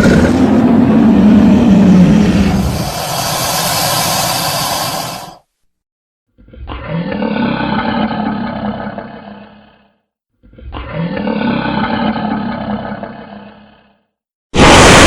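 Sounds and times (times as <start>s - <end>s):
deep rough monster roar: 0.0s - 5.4s, 10.7s - 13.9s, 14.6s - 15.0s.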